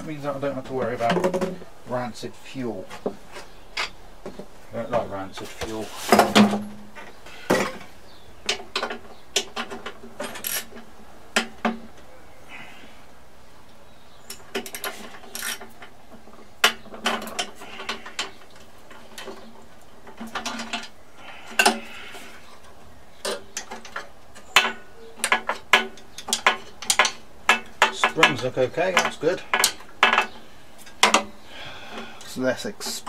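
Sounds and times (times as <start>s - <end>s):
hand tools clanking on metal: 14.2s - 33.0s.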